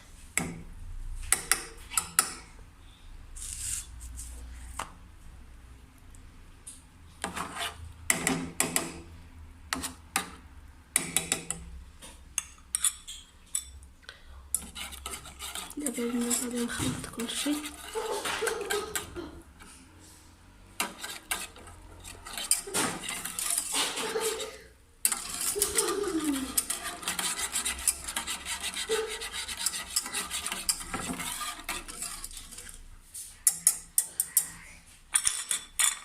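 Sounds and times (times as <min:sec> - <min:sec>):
metal spoon scraping pot: 0:07.2 - 0:09.0, 0:09.7 - 0:10.4, 0:12.4 - 0:13.8, 0:14.5 - 0:19.8, 0:20.6 - 0:36.0.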